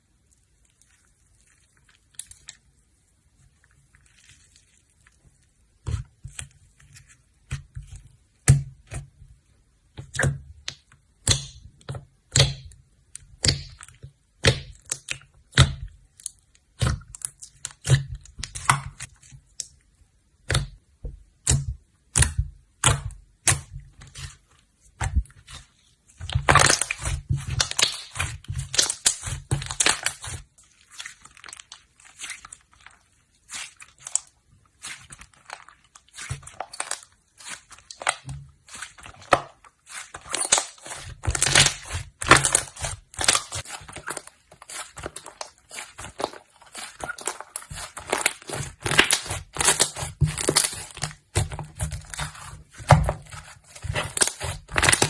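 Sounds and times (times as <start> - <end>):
slime crackling: 21.4 - 55.0.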